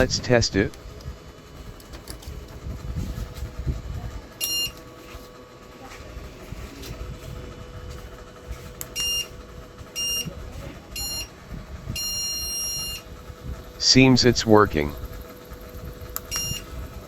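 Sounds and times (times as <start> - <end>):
steady low hum: 0.0 - 17.0
short high-pitched beeps: 4.4 - 4.8, 8.9 - 9.4, 10.0 - 10.3, 11.0 - 11.3, 12.0 - 13.0, 16.3 - 16.7.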